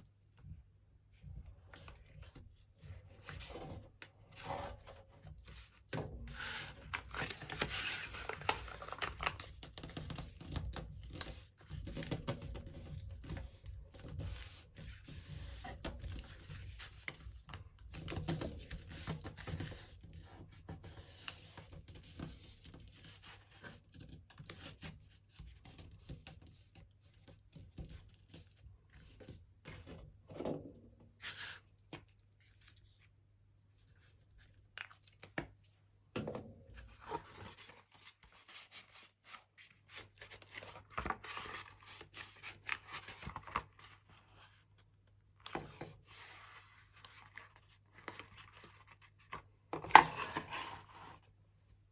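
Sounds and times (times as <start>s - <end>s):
paper rustling and crinkling: 6.3s - 19.9s, 36.8s - 44.6s, 45.4s - 51.4s.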